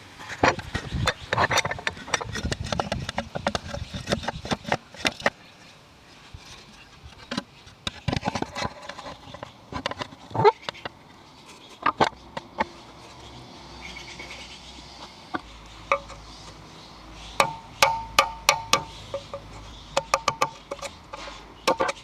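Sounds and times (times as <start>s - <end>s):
wood scraping: 15.4s - 22.0s
wooden clicks and knocks: 15.9s - 16.7s, 17.4s - 22.0s.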